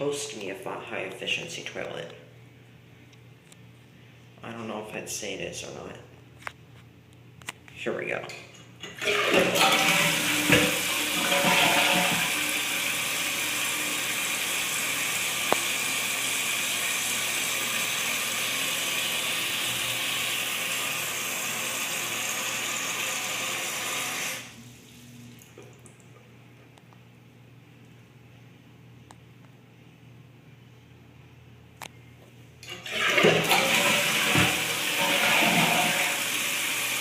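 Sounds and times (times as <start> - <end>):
toilet bowl gurgling: 8.8 - 25.9, 32.6 - 37.0
water pouring into tank: 9.0 - 24.5, 32.7 - 37.0
fill valve hissing: 9.0 - 24.6, 32.6 - 37.0.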